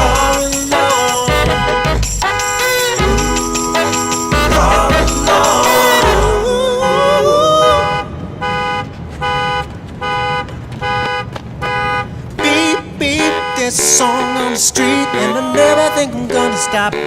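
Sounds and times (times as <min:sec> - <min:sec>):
music with singing: 0:00.0 - 0:08.0, 0:12.4 - 0:17.0
car alarm: 0:00.0 - 0:17.0.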